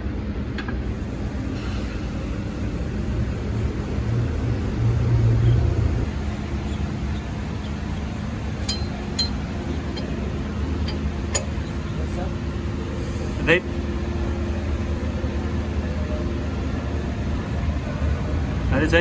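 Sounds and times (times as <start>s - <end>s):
low mechanical hum: 0.0s - 19.0s
light metallic clinks: 8.6s - 10.2s, 10.8s - 12.2s.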